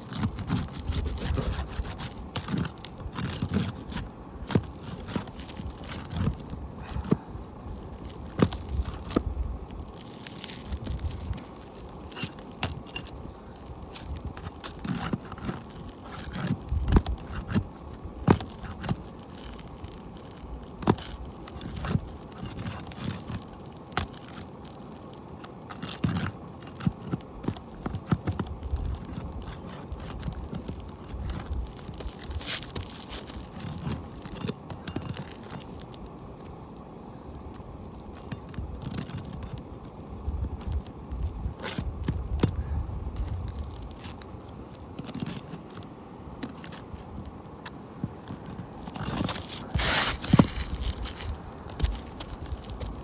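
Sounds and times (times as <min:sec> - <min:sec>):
hand tool scraping under shingles: 0:00.0 - 0:36.0, 0:48.2 - 0:53.0.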